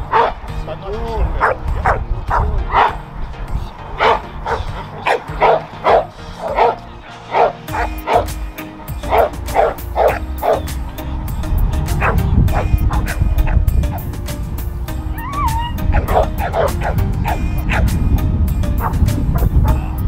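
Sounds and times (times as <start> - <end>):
dog barking: 0.0 - 0.4, 1.4 - 3.0, 4.0 - 8.3, 9.1 - 10.7, 12.0 - 14.0, 15.6 - 17.9
background music: 0.0 - 20.0.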